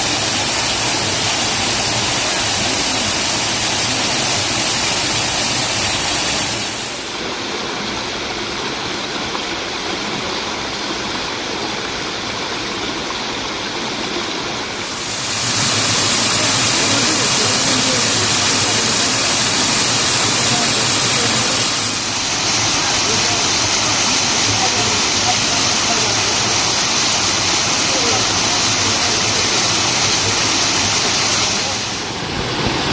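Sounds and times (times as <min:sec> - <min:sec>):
stream rushing over rocks: 0:00.0 - 0:32.9.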